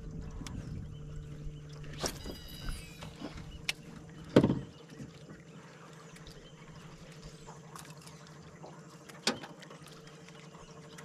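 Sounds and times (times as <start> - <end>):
steady low hum: 0.0 - 11.0
dull thump against boat: 4.2 - 4.7.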